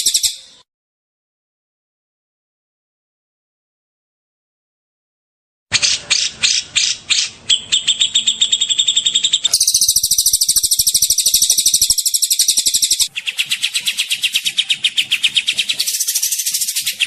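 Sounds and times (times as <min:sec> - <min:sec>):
songbird whistles and trills: 0:00.0 - 0:00.6, 0:05.8 - 0:17.0.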